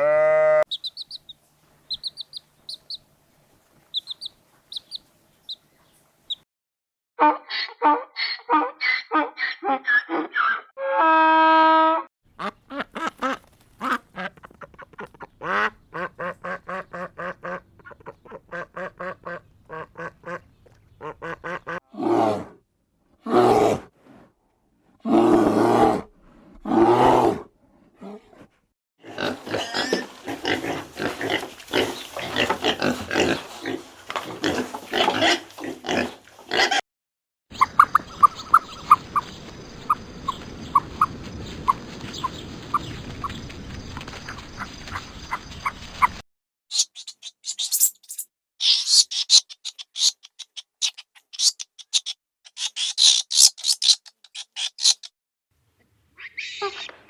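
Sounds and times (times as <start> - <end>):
farm animals calling: 0.0 - 3.1, 3.9 - 5.7, 12.4 - 21.8, 29.0 - 36.8
quick ticking chirps: 0.7 - 3.0, 3.9 - 5.7, 37.6 - 39.3, 46.8 - 55.1.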